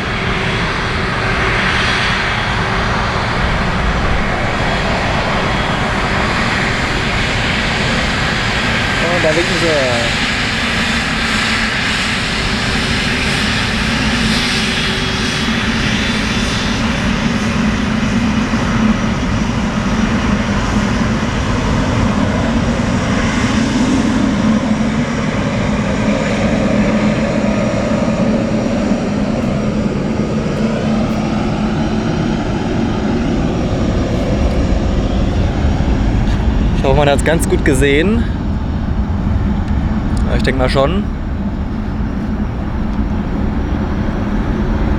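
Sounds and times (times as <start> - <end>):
jet engines at taxi power: 0.0 - 44.9.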